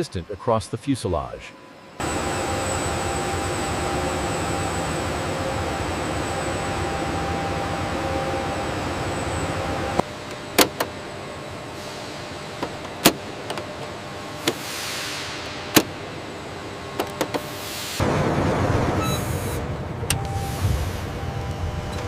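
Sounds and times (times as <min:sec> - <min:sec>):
steady mechanical hum: 0:00.0 - 0:22.0
loud rushing noise: 0:17.5 - 0:21.3.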